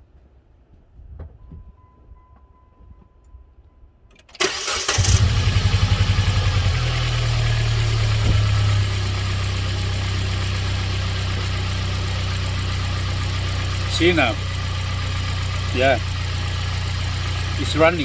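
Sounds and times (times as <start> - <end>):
car engine starting and idling: 4.1 - 18.0.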